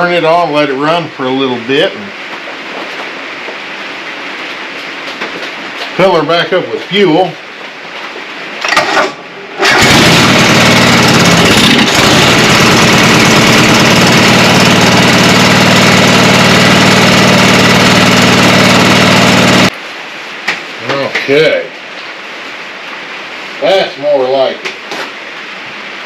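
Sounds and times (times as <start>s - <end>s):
lawn tractor engine running: 8.6s - 19.7s.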